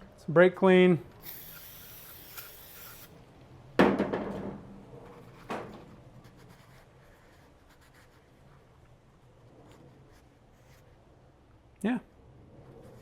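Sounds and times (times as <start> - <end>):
aerosol spray hiss: 1.2 - 3.1.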